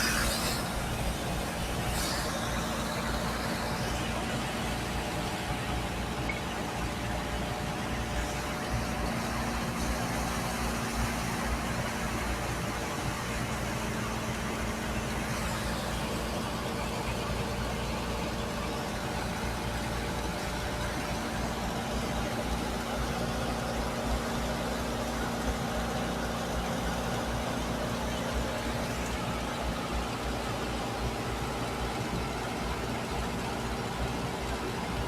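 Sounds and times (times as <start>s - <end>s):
high-pressure water jet spraying sand: 0.0s - 6.0s
engine droning: 0.0s - 35.0s.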